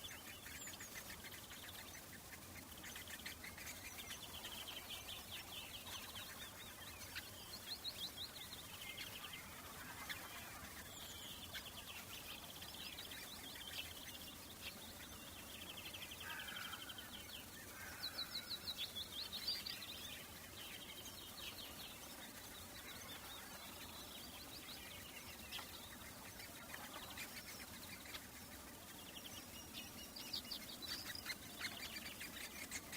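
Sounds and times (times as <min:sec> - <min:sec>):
songbirds trilling: 0:00.0 - 0:32.9
steady outdoor hiss: 0:00.0 - 0:32.9.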